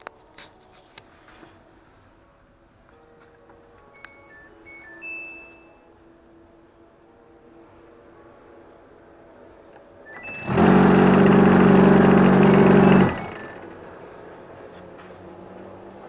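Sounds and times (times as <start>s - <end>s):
harsh mechanical noise: 10.2s - 13.8s
tumble dryer humming: 10.2s - 13.8s.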